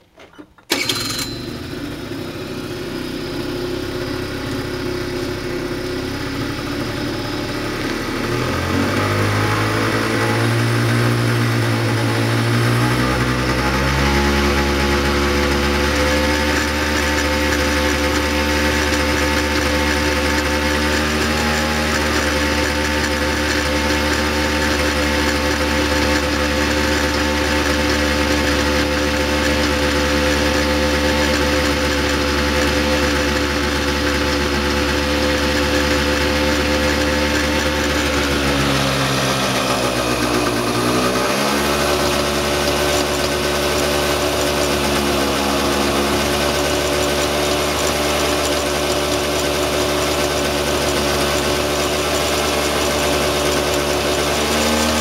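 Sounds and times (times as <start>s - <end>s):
small car engine running: 0.7s - 55.0s.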